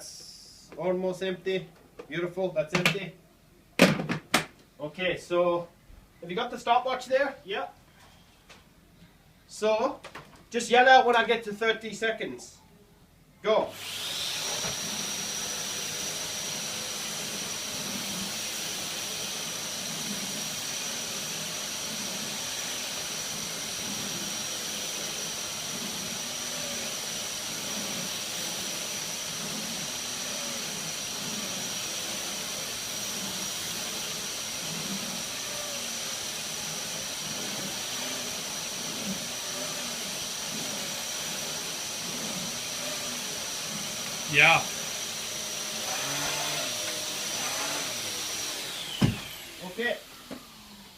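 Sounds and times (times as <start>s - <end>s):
vacuum cleaner whining: 13.7s - 50.9s.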